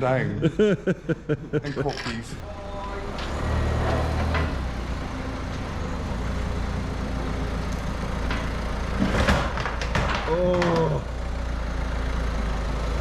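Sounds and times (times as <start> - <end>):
vehicle engine idling: 2.2 - 13.0.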